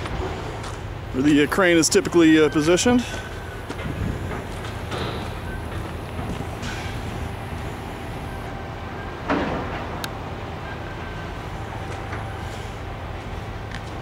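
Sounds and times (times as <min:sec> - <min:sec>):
heavy machinery droning: 0:00.0 - 0:14.0.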